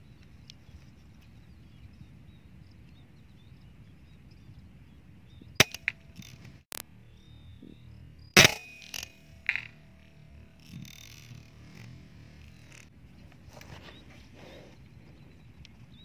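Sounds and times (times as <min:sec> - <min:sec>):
wind rumble on microphone: 0:00.0 - 0:08.4, 0:10.4 - 0:16.0
small clicks: 0:05.6 - 0:06.9
air rifle shot: 0:08.4 - 0:09.1.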